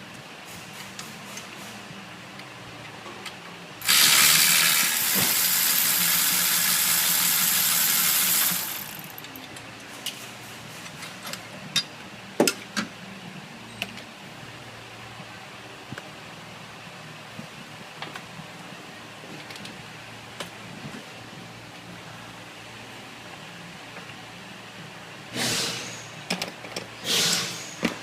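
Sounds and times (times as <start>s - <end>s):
loud compressed air hiss: 3.8s - 9.2s, 25.3s - 26.2s, 27.0s - 27.9s.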